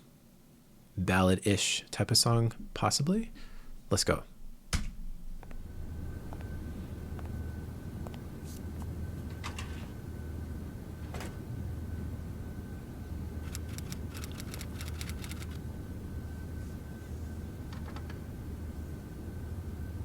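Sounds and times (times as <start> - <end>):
steady low hum: 0.0 - 20.0
computer keyboard and mouse clicks: 13.5 - 15.6.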